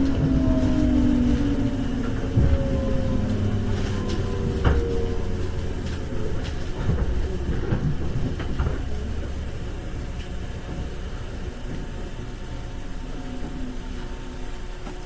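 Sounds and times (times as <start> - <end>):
wheels knocking: 0.0 - 12.2
train interior rumble: 0.0 - 15.0.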